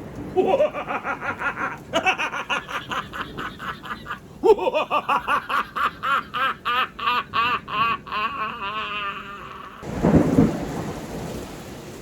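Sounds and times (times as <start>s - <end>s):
thunder clap rumbling: 0.0s - 3.8s, 9.8s - 12.0s
heavy rain: 0.0s - 12.0s
man laughing: 0.4s - 9.9s.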